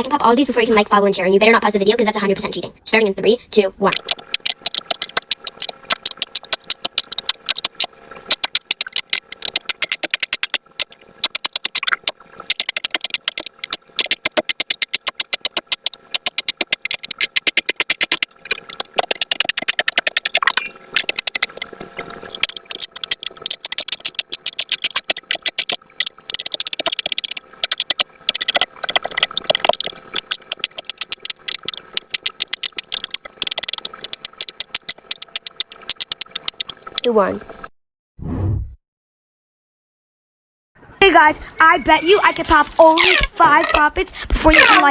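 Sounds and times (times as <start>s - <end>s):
fidget toy bubbles popping: 3.8s - 37.4s, 42.2s - 44.9s.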